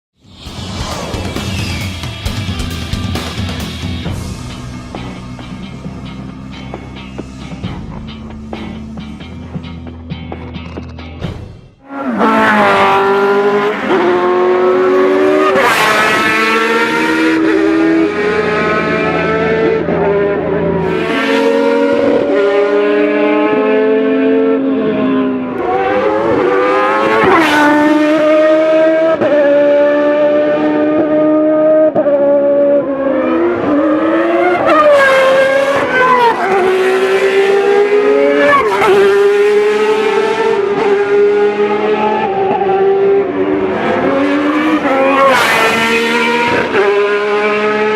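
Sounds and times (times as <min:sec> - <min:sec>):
race car engine revving: 0:11.8 - 0:47.9.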